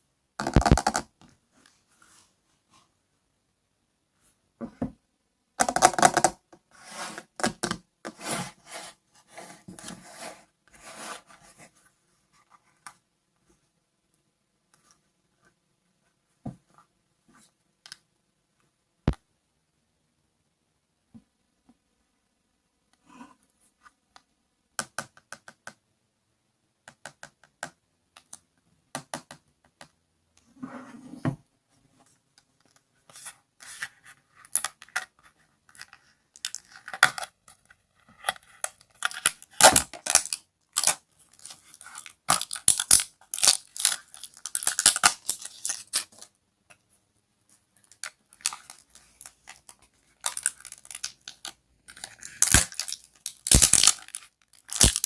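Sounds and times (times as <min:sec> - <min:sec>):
squishy ice toy crunching: 0:52.0 - 0:55.0.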